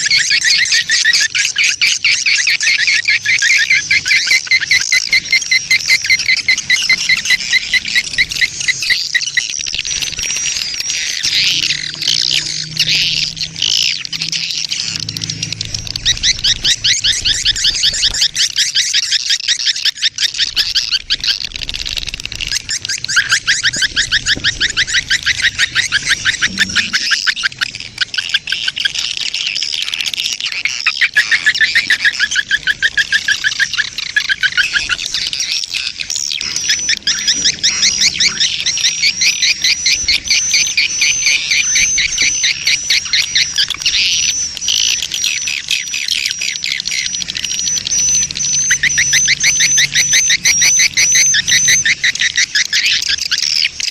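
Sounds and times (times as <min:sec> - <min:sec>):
swiftlets chirping: 0:02.7 - 0:27.5
thin steady high tone: 0:36.4 - 0:53.4.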